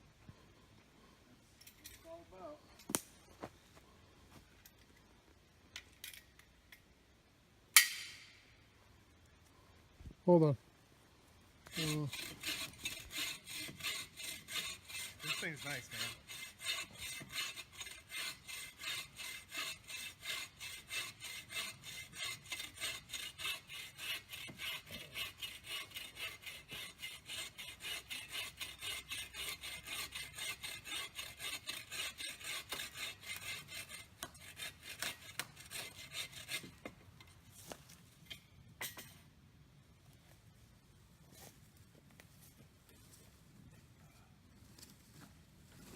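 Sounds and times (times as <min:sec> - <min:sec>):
hand saw cutting wood: 0:11.6 - 0:37.0.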